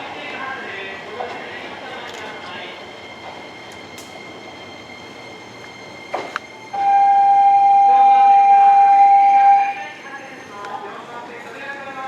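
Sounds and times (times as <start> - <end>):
train horn blast: 6.8 - 9.7.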